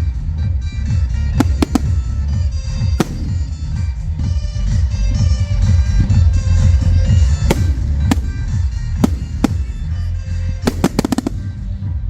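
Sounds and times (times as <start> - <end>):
loud music: 1.1 - 11.8
fireworks cracking: 1.4 - 2.3, 3.0 - 3.6, 7.5 - 9.9, 10.7 - 11.5
deep booms: 1.4 - 4.3, 7.4 - 10.0.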